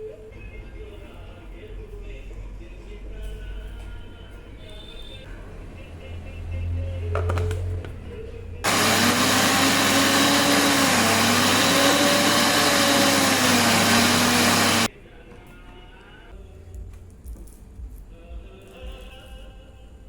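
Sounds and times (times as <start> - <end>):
high-speed electric motor running: 8.7 - 14.9.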